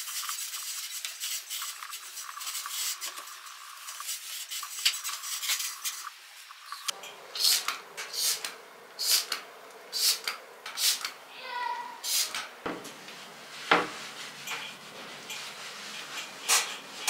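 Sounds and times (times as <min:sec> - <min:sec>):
scrubbing and rubbing: 0:12.9 - 0:17.0
dishes clinking and clattering: 0:13.7 - 0:17.0.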